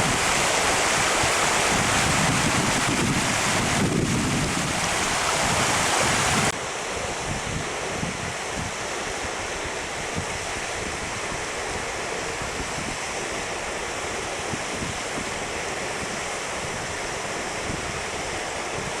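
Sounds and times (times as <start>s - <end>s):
floodwater rushing: 0.0s - 6.6s
wind buffeting microphone: 0.0s - 19.0s.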